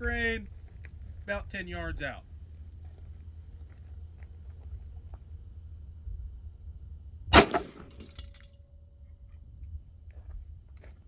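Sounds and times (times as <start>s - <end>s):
pistol shot: 7.3s - 8.2s.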